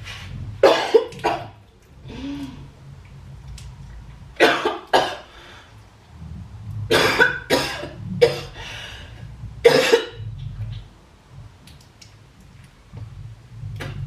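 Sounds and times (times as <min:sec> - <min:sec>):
woman coughing: 0:00.6 - 0:01.5, 0:09.6 - 0:10.2.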